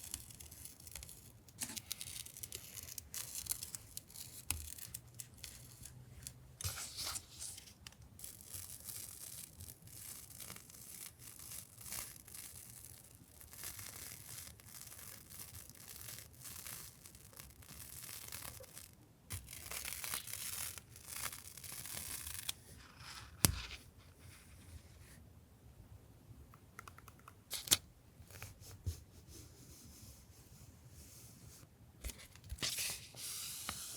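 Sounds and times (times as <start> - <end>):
paper rustling and rubbing: 0.0 - 24.8, 31.0 - 33.9
paper tearing: 6.6 - 23.8.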